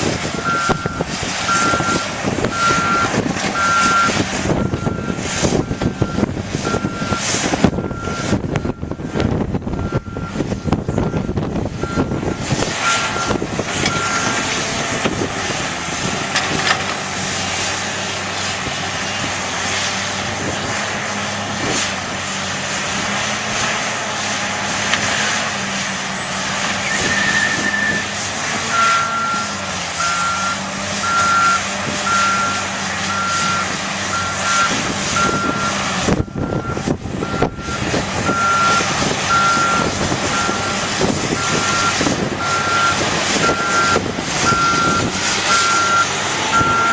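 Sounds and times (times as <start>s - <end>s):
heavy diesel engine running: 0.0s - 46.9s
reversing alarm beeping: 0.4s - 14.4s, 28.7s - 46.9s.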